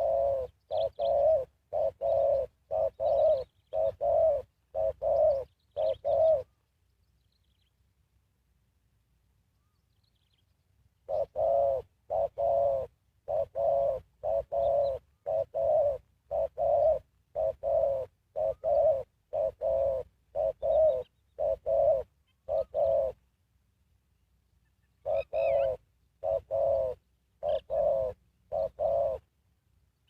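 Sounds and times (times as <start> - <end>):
dove cooing: 0.0 - 6.6, 11.0 - 23.3, 24.9 - 29.3.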